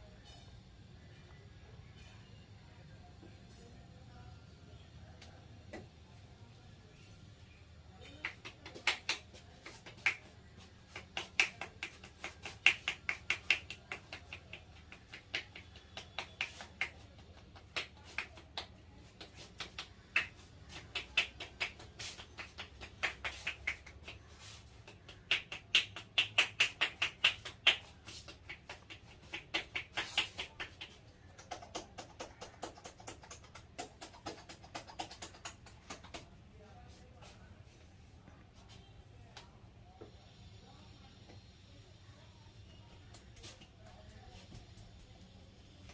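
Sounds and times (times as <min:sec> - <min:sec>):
hands slapping a head: 0:08.0 - 0:36.3.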